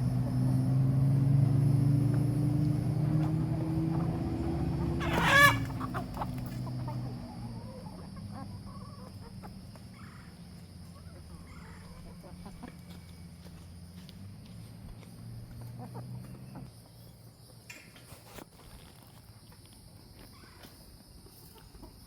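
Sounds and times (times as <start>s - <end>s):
vehicle low rumble: 0.0s - 17.3s
chicken clucking: 3.2s - 13.6s, 15.5s - 16.7s
chicken call: 5.0s - 6.9s.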